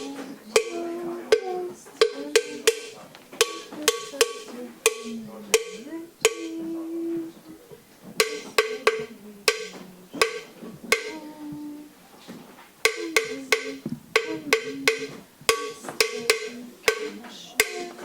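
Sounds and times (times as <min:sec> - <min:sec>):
sharp struck ringing notes: 0:00.0 - 0:06.8.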